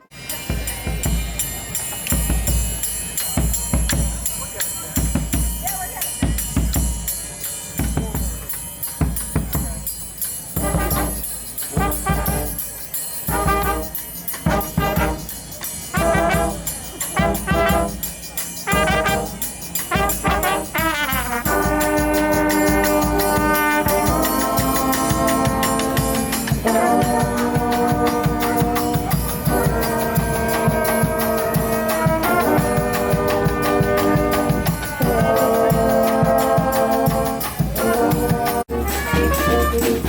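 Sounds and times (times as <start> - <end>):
drum beat: 0.4 - 12.7, 13.3 - 40.0
brass band playing: 10.5 - 40.0.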